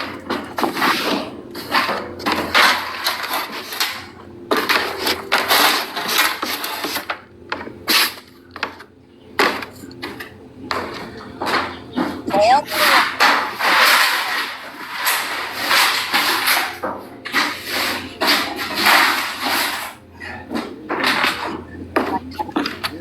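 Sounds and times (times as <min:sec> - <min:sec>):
stiff broom sweeping: 0:12.3 - 0:20.0.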